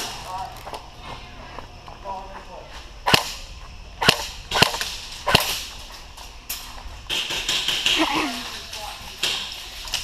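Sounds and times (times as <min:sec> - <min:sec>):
airsoft gun shots: 0:03.0 - 0:03.4, 0:04.0 - 0:05.7.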